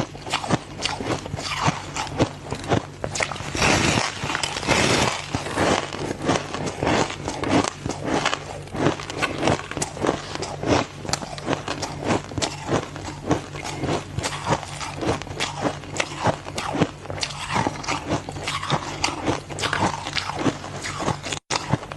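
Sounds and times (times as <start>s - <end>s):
ice being chewed: 0.0s - 21.9s.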